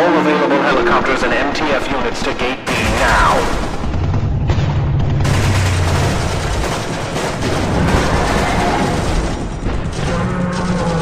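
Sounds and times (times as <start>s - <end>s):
rapid gunfire: 0.7s - 11.0s.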